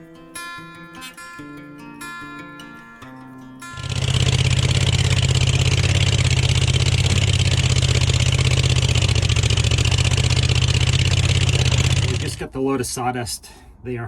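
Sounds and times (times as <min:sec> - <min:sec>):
tractor diesel engine running: 0:03.8 - 0:12.4.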